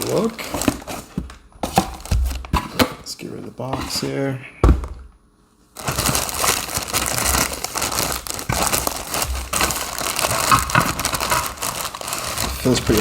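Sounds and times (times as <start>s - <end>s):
plastic packaging crinkling: 0.0s - 2.6s, 5.7s - 13.0s.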